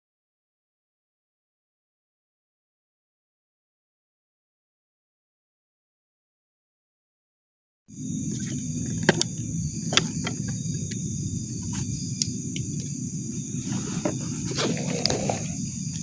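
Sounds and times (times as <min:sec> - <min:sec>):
crickets chirring: 0:07.9 - 0:16.0
low rumbling noise: 0:07.9 - 0:16.0.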